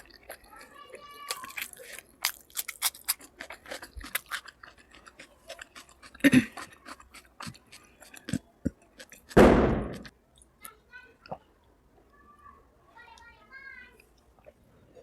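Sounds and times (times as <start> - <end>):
chewing crunchy food: 0.0 - 11.4.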